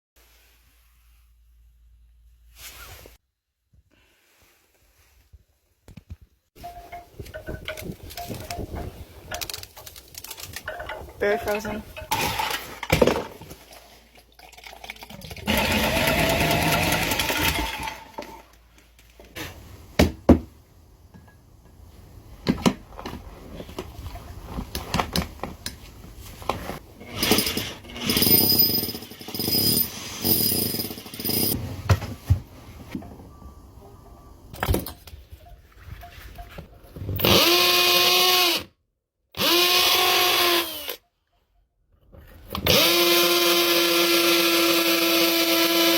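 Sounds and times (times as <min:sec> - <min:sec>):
power tools running: 0:15.5 - 0:18.4.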